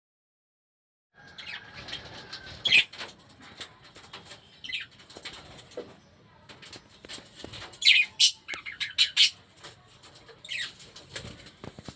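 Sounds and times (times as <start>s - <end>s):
birds chirping: 1.2s - 11.9s
clicks and rustles: 2.3s - 8.7s, 9.4s - 11.9s.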